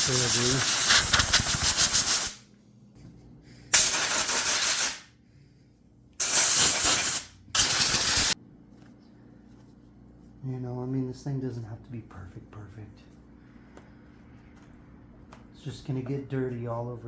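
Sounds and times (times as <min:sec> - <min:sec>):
compressed air blasts hissing: 0:00.0 - 0:02.4, 0:03.7 - 0:05.1, 0:06.2 - 0:08.4.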